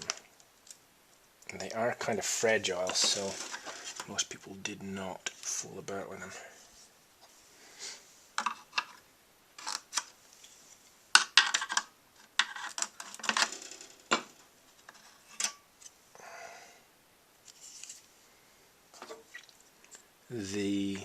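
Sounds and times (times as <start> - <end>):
soft rub: 6.5 - 8.3, 17.4 - 18.3
computer parts clicking and clattering: 11.2 - 14.4.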